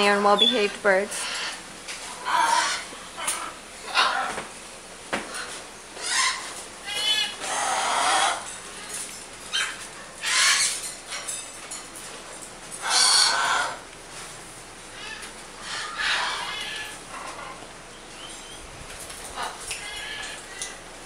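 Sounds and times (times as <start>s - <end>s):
parrots squawking: 0.3s - 4.5s, 5.3s - 11.4s, 12.8s - 13.9s, 14.9s - 17.6s, 19.2s - 20.8s.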